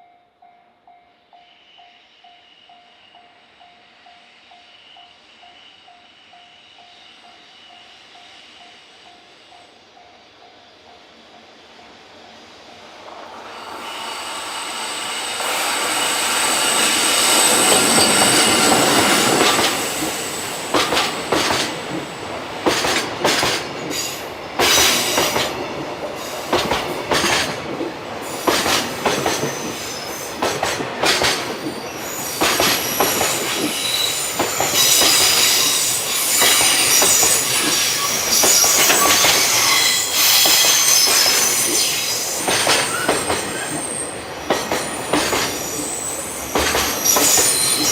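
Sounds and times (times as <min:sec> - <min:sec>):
freight train rolling past: 0:00.0 - 0:47.9
wheels squealing against rails: 0:01.3 - 0:47.9
clacks over rail joints: 0:20.7 - 0:25.9, 0:26.5 - 0:29.6, 0:30.4 - 0:31.8, 0:42.4 - 0:43.8, 0:44.4 - 0:45.8, 0:46.5 - 0:47.9.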